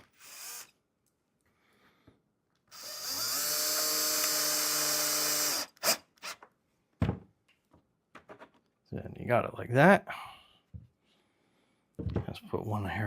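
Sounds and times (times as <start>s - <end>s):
power drill driving screw: 0.0s - 0.7s, 2.7s - 6.4s.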